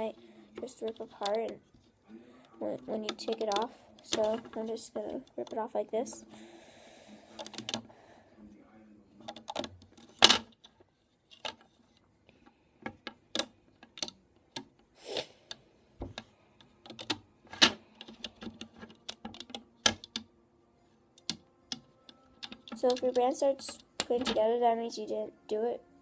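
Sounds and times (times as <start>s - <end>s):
rubber bands snapping and clicking: 12.8s - 14.8s.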